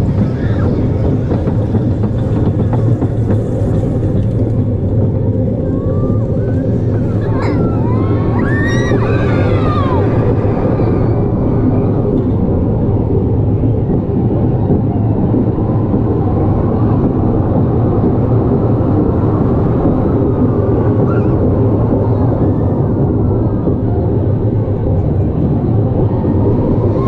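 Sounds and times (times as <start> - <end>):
steady low rumbling: 0.0 - 27.0.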